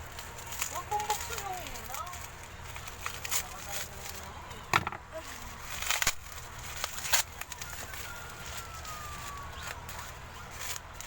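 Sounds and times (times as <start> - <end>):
plastic packaging crinkling and tearing: 0.0 - 11.0.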